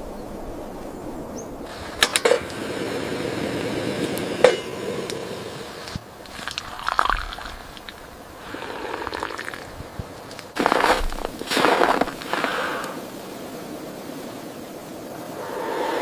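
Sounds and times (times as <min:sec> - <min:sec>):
steady rushing noise: 0:01.2 - 0:06.3, 0:09.6 - 0:16.0
crunching sounds: 0:05.8 - 0:13.0.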